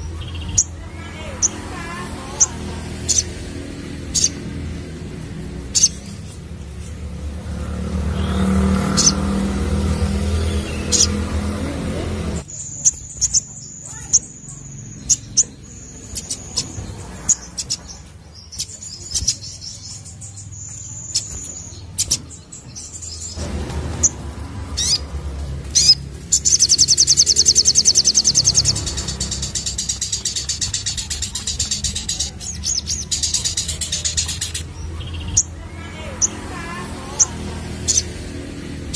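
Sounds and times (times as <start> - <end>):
bird fast trill: 8.1 - 11.6, 25.7 - 36.4
bird singing high whistled notes: 25.8 - 31.2.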